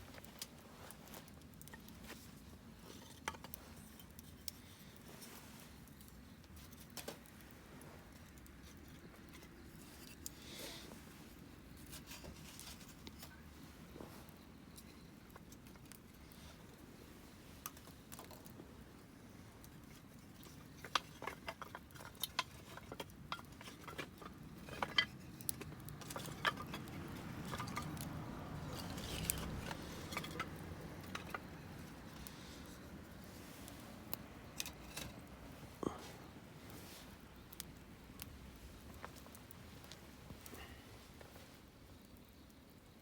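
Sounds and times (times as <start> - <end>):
wood fire crackling: 0.0 - 43.0.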